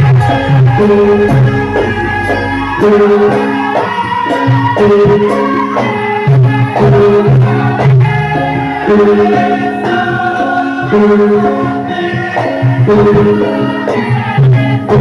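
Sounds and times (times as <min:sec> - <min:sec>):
held instrumental notes: 0:00.0 - 0:15.0
person singing: 0:00.0 - 0:15.0.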